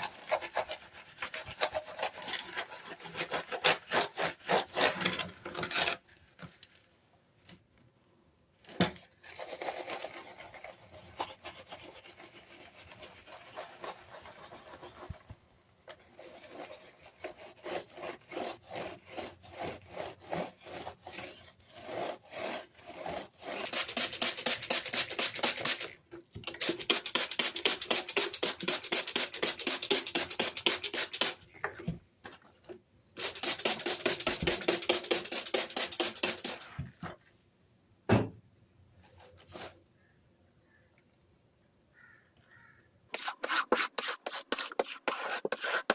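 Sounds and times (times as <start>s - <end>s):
scrubbing strokes on keyboard: 43.1s - 45.9s.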